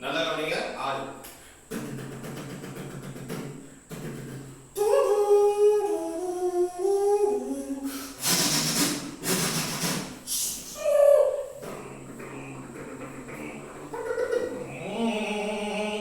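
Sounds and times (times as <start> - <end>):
man humming nasal melody: 1.7 - 16.0
man hissing breathily: 7.4 - 13.6.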